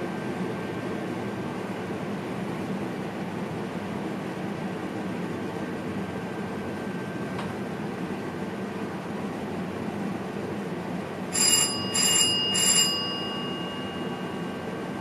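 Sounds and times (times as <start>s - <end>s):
electric bell ringing: 11.3s - 15.0s.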